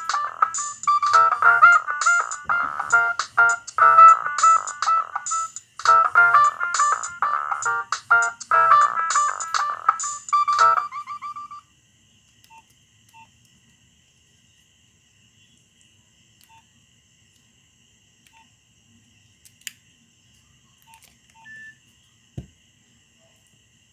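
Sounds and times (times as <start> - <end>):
electronic ringtone melody: 0.0 - 11.6
faint electronic whine: 0.0 - 11.7
click: 16.4 - 16.6, 18.2 - 18.4.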